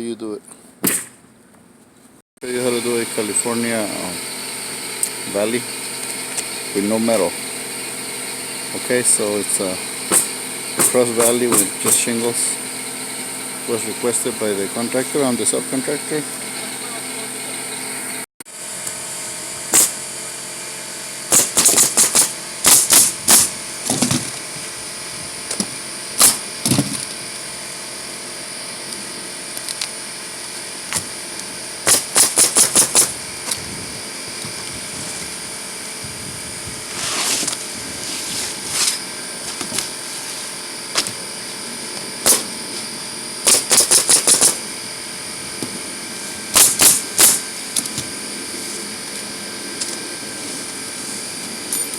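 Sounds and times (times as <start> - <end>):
nail gun firing: 0.8 - 1.2, 10.0 - 12.1, 19.7 - 20.0, 21.3 - 24.4, 25.5 - 27.1, 31.8 - 33.6, 42.2 - 42.6, 43.4 - 44.6, 46.5 - 47.9
soft scraping: 36.9 - 39.0.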